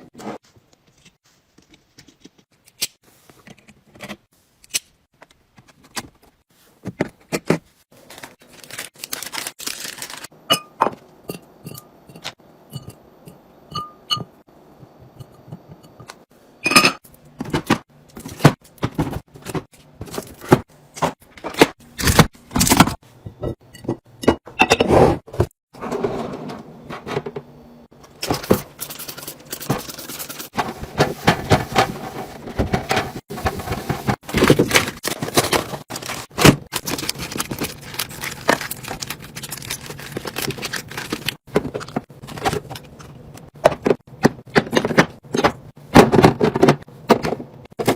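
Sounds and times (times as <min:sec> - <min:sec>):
containers knocking and scraping: 0:22.9 - 0:47.9.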